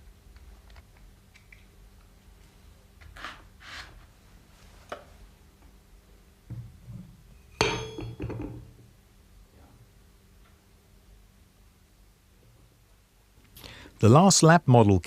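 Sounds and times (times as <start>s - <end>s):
metal clinking on metal: 7.6s - 8.6s.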